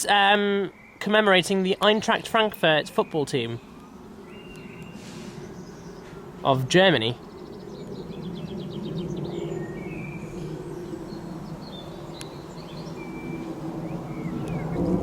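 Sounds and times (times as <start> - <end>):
birds chirping: 0.0 - 15.0
jet engine rumble: 1.8 - 15.0.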